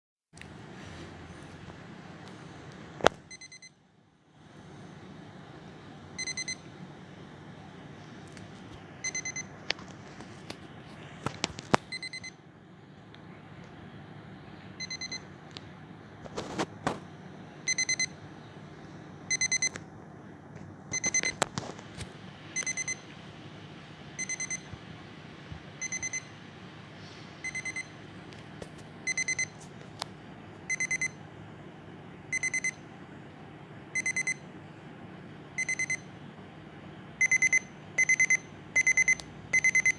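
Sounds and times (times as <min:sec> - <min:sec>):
steady low hum: 0:00.4 - 0:39.9
alarm clock beeping: 0:03.3 - 0:03.7, 0:06.2 - 0:06.6, 0:09.0 - 0:09.5, 0:11.9 - 0:12.3, 0:14.8 - 0:15.2, 0:17.7 - 0:18.2, 0:19.3 - 0:19.7, 0:22.6 - 0:23.0, 0:24.2 - 0:24.7, 0:25.8 - 0:26.3, 0:27.4 - 0:27.9, 0:29.1 - 0:29.6, 0:30.7 - 0:31.2, 0:32.3 - 0:32.8, 0:34.0 - 0:34.4, 0:35.6 - 0:36.1, 0:37.2 - 0:39.9.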